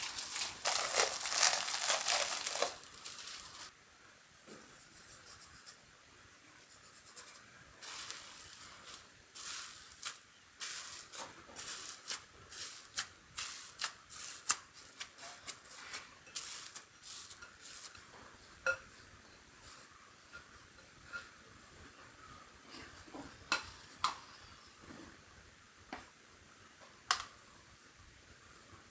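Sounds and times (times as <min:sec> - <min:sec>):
hands rustling and scraping: 0:00.0 - 0:03.7, 0:07.1 - 0:18.1.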